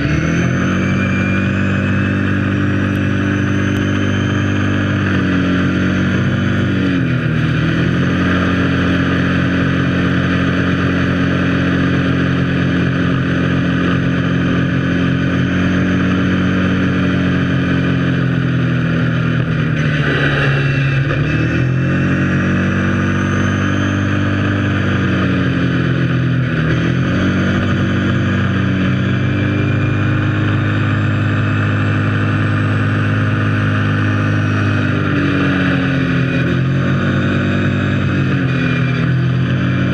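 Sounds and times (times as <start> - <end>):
quad engine running: 0.0 - 39.9
steady rushing noise: 0.0 - 39.9.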